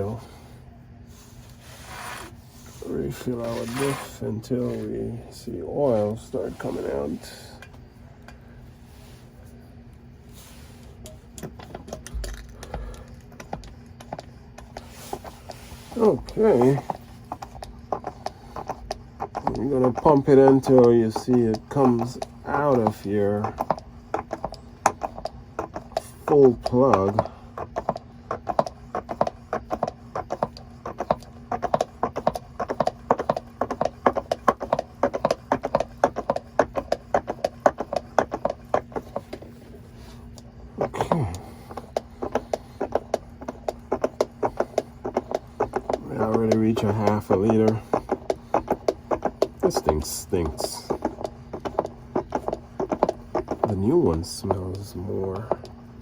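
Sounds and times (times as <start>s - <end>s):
hand pump clacking strokes: 11.9s - 39.5s, 40.4s - 55.8s.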